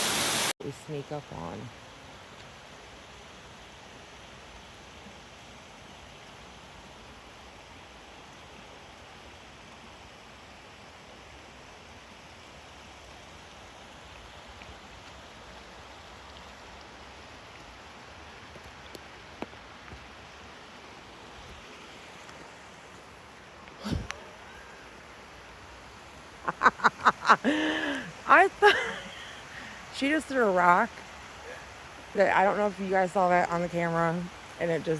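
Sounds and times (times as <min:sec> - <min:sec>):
waterfall rushing: 0:00.0 - 0:00.6, 0:20.2 - 0:34.9.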